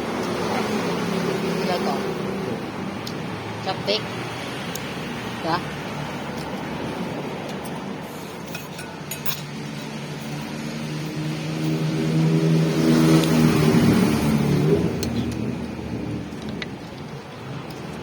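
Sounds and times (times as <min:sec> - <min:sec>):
vehicle engine passing: 0:09.4 - 0:18.0.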